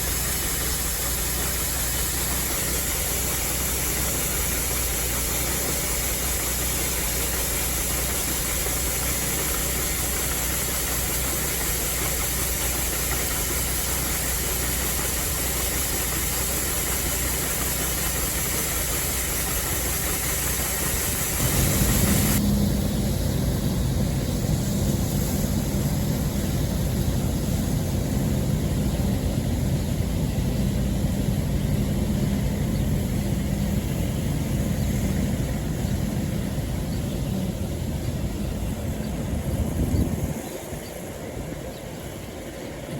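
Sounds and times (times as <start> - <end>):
steady hiss: 0.0 - 42.9
tractor engine hum: 0.0 - 42.9.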